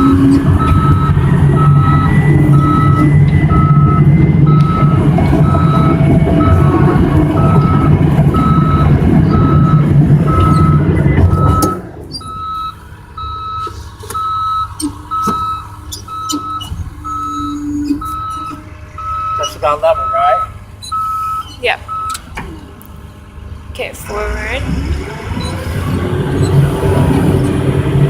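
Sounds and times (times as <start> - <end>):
backup alarm beeping: 0.0 - 22.4
diesel engine running: 0.0 - 28.0.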